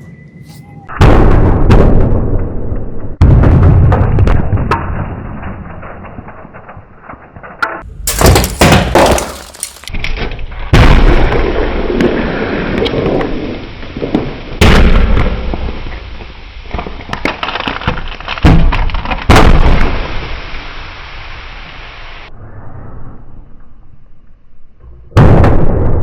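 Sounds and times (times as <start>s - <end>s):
car tyre crushing objects: 7.8s - 10.5s, 16.7s - 19.5s
hard pops: 8.1s - 10.0s.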